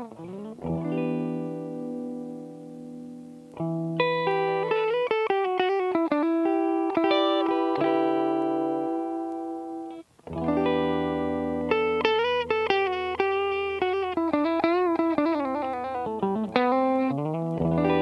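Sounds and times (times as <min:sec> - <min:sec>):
electric guitar chords and melody: 0:00.0 - 0:18.0.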